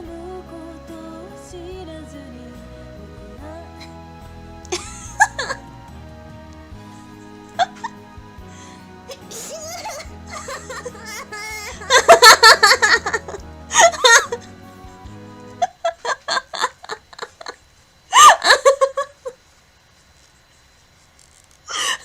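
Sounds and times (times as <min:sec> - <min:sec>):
instrumental backing track: 0:00.0 - 0:15.7
woman laughing: 0:04.7 - 0:05.6, 0:07.6 - 0:08.0, 0:09.1 - 0:14.4, 0:15.6 - 0:19.4.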